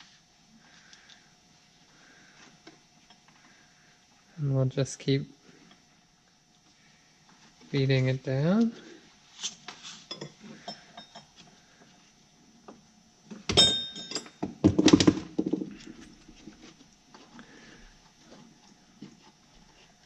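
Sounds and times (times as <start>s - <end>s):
metallic knock with ring: 13.5s - 14.4s.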